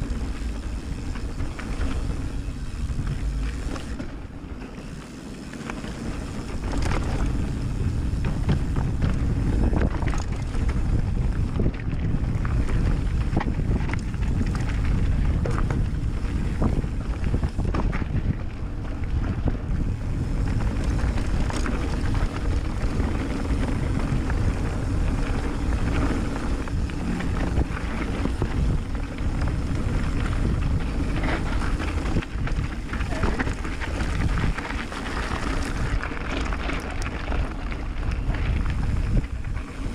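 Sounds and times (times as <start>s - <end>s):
wind rushing over microphone: 0.0s - 4.4s, 5.7s - 39.9s
bike rattling over bumps: 0.0s - 39.9s
tyres rumbling on trail: 0.0s - 39.9s.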